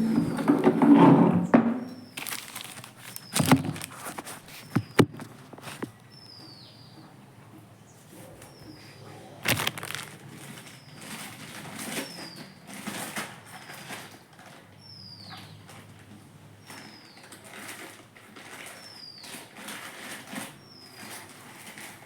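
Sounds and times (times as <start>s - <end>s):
handling rustles: 0.0s - 6.1s, 8.0s - 14.6s
bird chirping: 5.9s - 9.4s, 14.8s - 15.7s.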